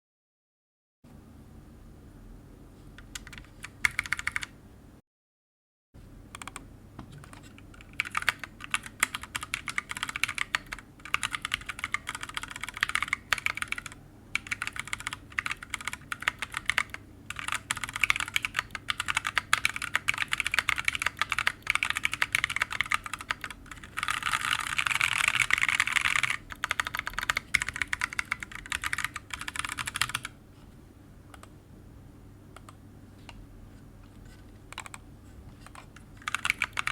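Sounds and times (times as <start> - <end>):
mechanical keyboard typing: 3.0 - 4.5, 6.4 - 30.3, 34.7 - 35.0, 35.6 - 36.9.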